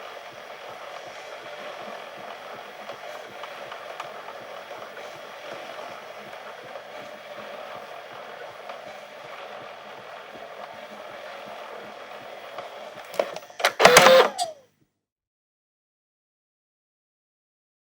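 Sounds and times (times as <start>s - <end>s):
camcorder tape transport whirring: 0.0s - 14.6s
loud mechanical clunks: 13.6s - 14.6s.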